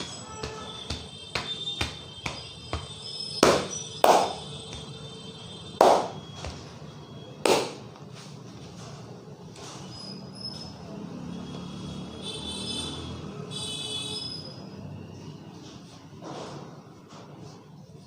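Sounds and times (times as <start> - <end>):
hands tapping head: 0.0 - 4.9
sharp hand slaps: 0.4 - 4.9, 5.8 - 6.2, 7.4 - 7.8.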